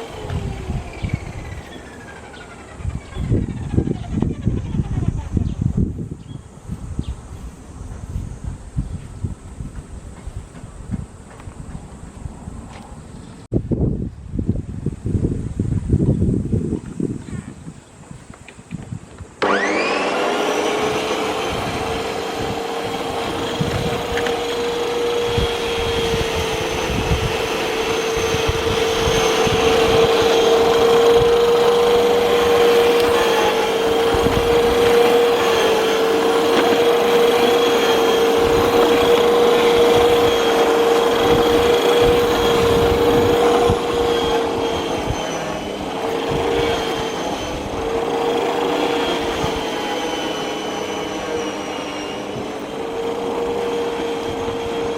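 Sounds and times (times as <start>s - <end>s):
electric lawn mower whine: 0.0s - 13.4s, 17.8s - 54.9s.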